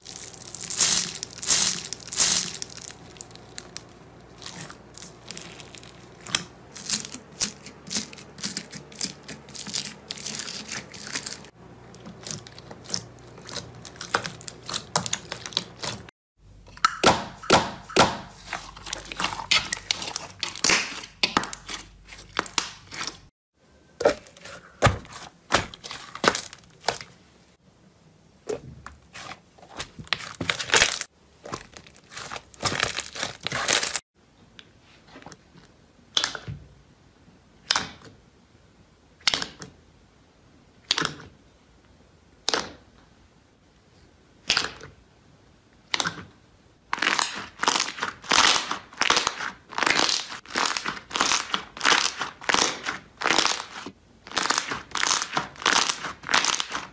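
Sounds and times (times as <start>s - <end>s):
slime crackling and squelching: 0.0s - 16.1s, 17.3s - 23.3s, 24.0s - 27.3s, 29.1s - 34.1s, 46.8s - 56.9s.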